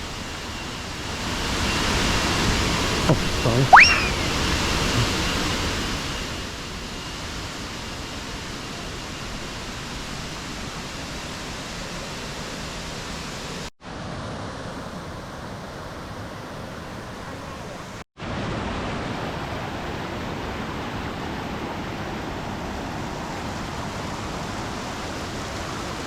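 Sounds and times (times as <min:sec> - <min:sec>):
waterfall rushing: 0:03.1 - 0:05.1.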